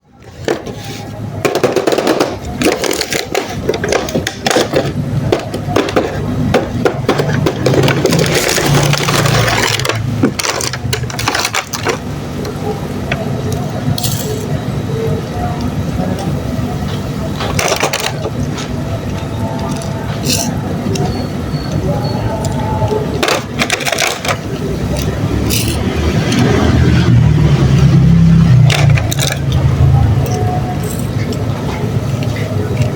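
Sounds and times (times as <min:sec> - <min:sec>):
toy cars clicking and clinking: 0:02.0 - 0:06.0, 0:07.1 - 0:12.0, 0:14.0 - 0:14.5, 0:19.6 - 0:21.1, 0:22.4 - 0:26.4, 0:28.6 - 0:31.4.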